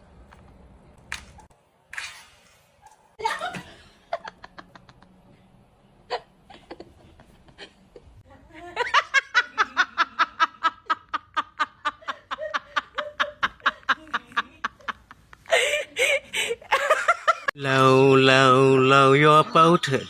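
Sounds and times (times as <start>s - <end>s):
person laughing: 6.1s - 17.5s.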